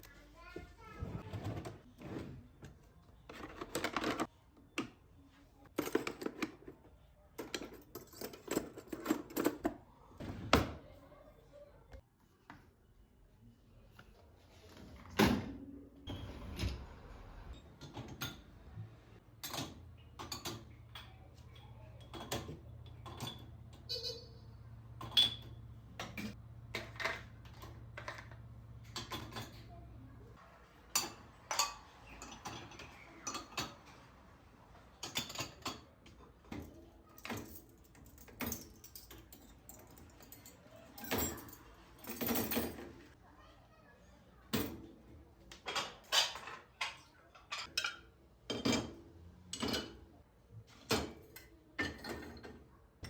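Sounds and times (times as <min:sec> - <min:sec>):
dishes and cutlery clinking: 0:19.4 - 0:24.4, 0:25.0 - 0:29.8, 0:30.9 - 0:34.1, 0:35.0 - 0:43.0, 0:45.6 - 0:50.1, 0:50.9 - 0:52.7.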